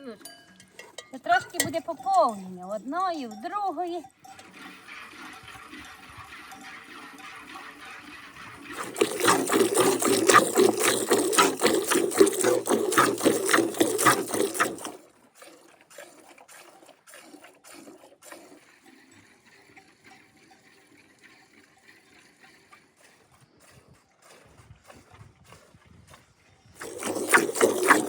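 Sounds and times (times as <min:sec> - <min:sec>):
milk squirting into a pail: 0:04.3 - 0:28.0.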